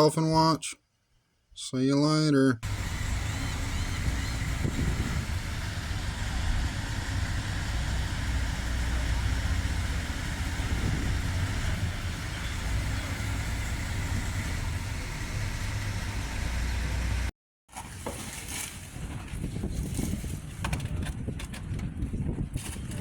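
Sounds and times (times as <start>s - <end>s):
engine rumbling: 2.6s - 17.3s.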